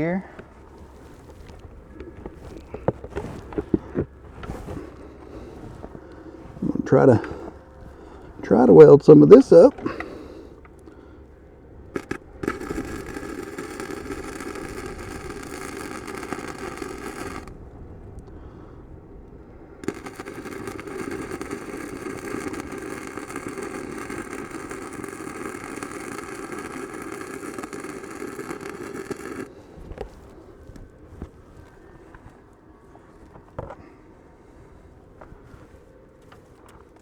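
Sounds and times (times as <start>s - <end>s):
welding arc crackling: 11.8s - 17.6s, 19.8s - 30.2s.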